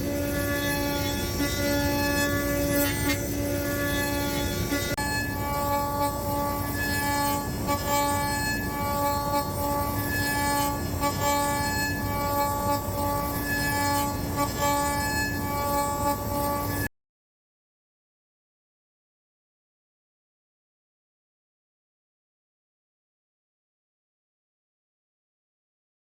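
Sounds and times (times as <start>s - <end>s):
router spindle whining: 0.0s - 16.9s.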